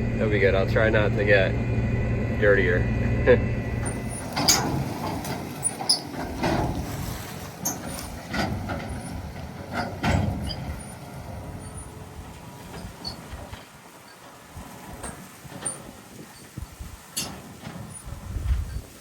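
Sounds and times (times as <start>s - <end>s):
low rumble: 0.0s - 12.9s
irregular knocks and clanks: 3.7s - 18.9s.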